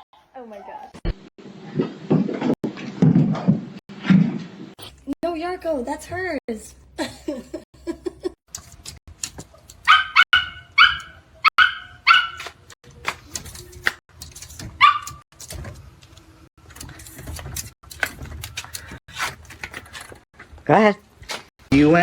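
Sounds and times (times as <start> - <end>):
dog yipping: 9.8 - 12.5, 14.8 - 15.2.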